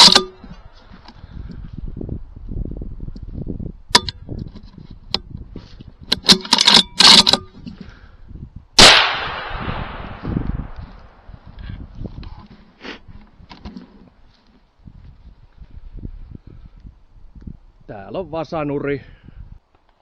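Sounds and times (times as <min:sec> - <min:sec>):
rifle shot echoing: 0:08.8 - 0:11.3.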